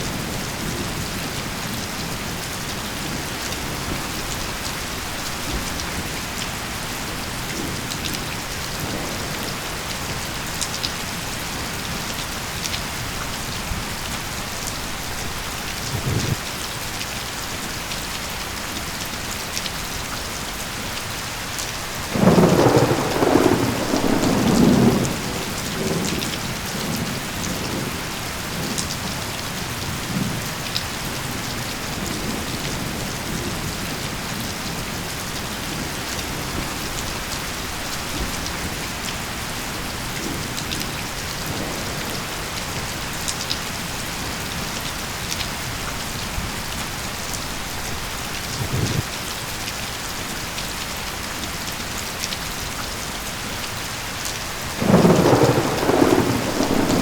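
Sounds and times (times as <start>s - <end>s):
steady rain falling: 0.0s - 57.0s
thunder rumble: 15.0s - 16.4s, 22.1s - 28.8s, 47.6s - 49.1s, 54.8s - 57.0s.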